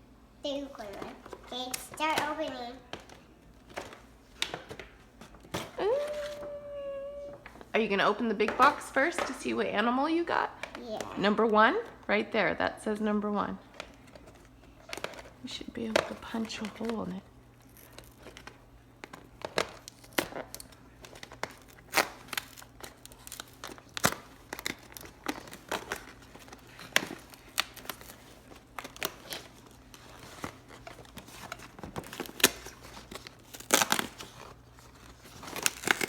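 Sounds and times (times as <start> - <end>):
packaging crinkling and ripping: 16.0 - 36.0.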